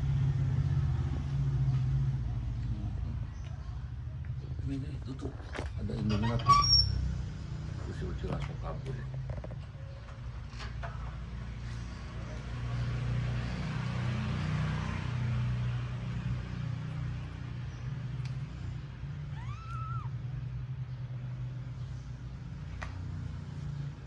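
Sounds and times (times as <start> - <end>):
low background rumble: 17.7 - 21.3
kitten mewing: 19.3 - 20.1.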